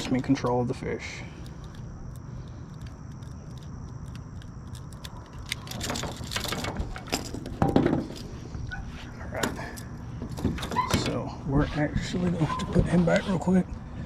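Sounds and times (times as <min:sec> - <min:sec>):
fishing lure clicking and rattling: 0:01.4 - 0:07.3.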